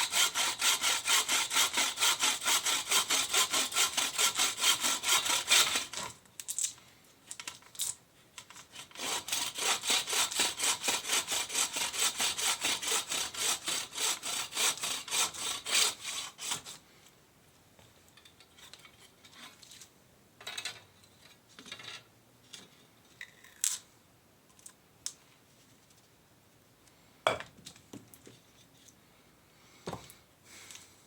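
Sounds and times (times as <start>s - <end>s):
saw cutting wood: 0.0s - 6.1s, 8.7s - 16.8s.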